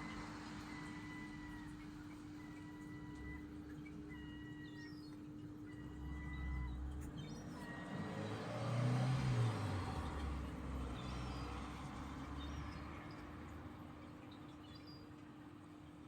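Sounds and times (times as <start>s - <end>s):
motor vehicle passing by: 0.0s - 3.4s, 5.7s - 14.6s.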